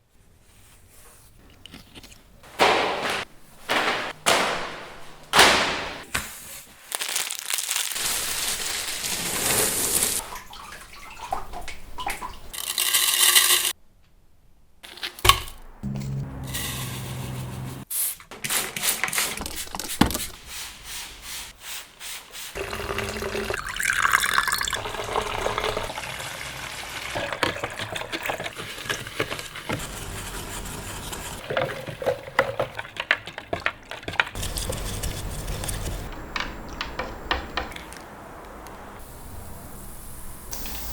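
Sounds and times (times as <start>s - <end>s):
clicks and knocks: 2.5s - 6.1s, 35.8s - 38.6s
running water: 8.0s - 12.7s, 22.5s - 31.4s
scraping: 28.4s - 38.0s.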